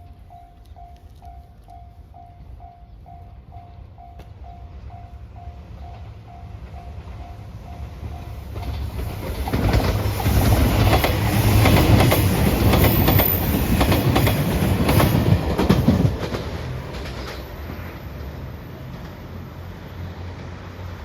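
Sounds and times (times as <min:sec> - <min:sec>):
train wheels clacking on rails: 0:04.1 - 0:19.5.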